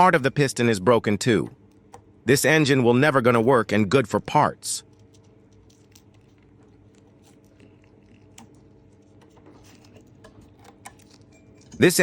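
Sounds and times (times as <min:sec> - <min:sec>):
steady low hum: 0:00.0 - 0:12.0
light handling noises: 0:04.8 - 0:12.0.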